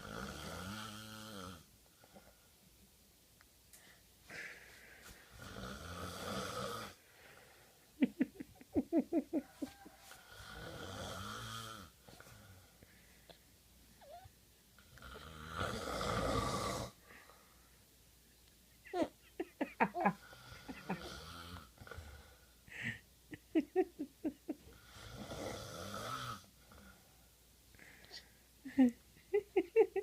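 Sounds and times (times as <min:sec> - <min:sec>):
man snoring: 0:00.0 - 0:01.7, 0:05.4 - 0:07.0, 0:10.2 - 0:12.5, 0:14.8 - 0:17.0, 0:20.2 - 0:22.4, 0:24.7 - 0:26.9
baby vocalizing: 0:14.0 - 0:14.3.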